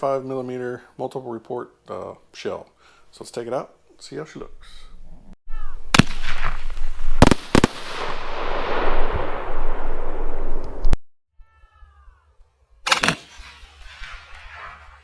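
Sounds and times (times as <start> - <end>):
firework bangs: 5.9 - 10.4, 12.9 - 15.0.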